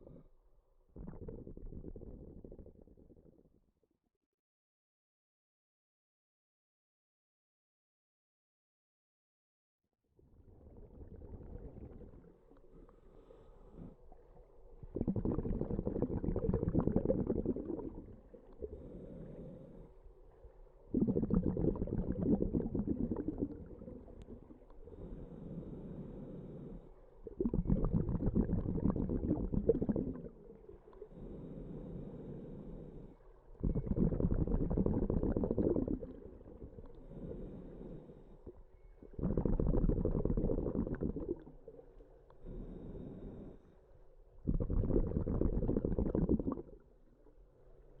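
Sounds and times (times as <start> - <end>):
diver bubbling exhalations: 1.0 - 3.0, 14.8 - 19.9, 20.9 - 33.0, 33.6 - 41.8, 44.4 - 46.9
regulator inhalations: 16.7 - 19.9, 24.9 - 30.3, 31.1 - 38.5, 42.4 - 43.8.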